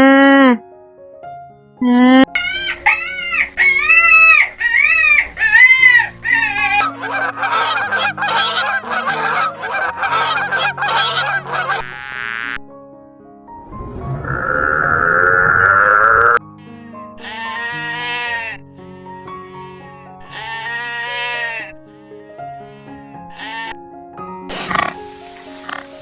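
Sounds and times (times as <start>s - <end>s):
soft background music: 0.2s - 14.8s, 16.4s - 26.0s
farm fowl calling: 2.4s - 12.5s, 17.2s - 18.6s, 19.6s - 21.7s, 23.4s - 23.7s.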